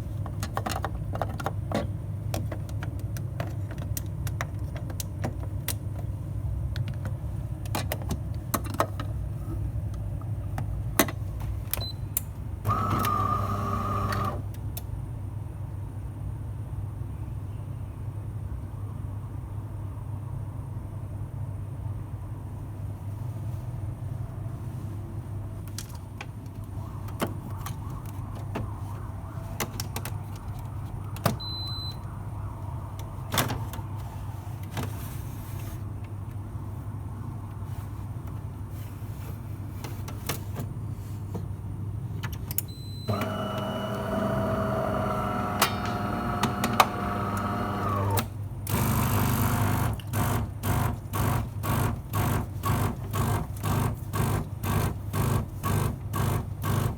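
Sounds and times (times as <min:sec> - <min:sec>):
coffee machine hum: 0:12.6 - 0:14.5, 0:42.7 - 0:56.9
motor whining: 0:12.7 - 0:14.4, 0:43.1 - 0:49.8
machine clicks: 0:42.5 - 0:56.9.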